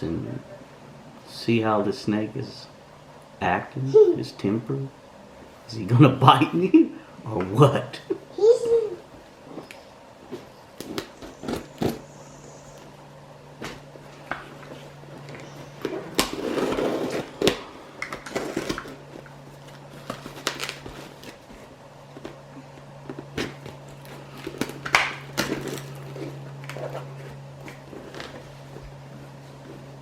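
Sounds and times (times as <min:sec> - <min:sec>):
steady low hum: 0:00.0 - 0:30.0
rustling and scraping: 0:09.1 - 0:30.0.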